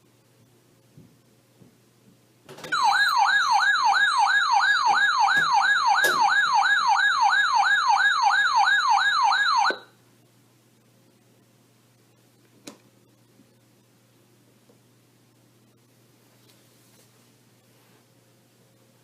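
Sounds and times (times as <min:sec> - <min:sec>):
electronic siren alert tone: 0:02.7 - 0:09.9.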